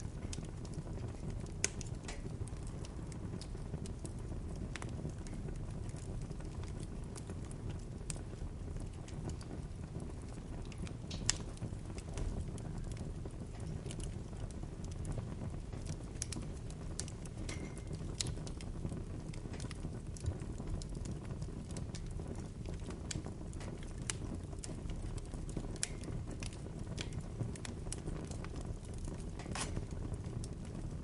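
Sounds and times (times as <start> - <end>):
bonfire crackling: 0.0 - 31.0
low rumble of flames: 0.0 - 31.0
wood popping and snapping: 1.6 - 2.3, 25.5 - 30.0.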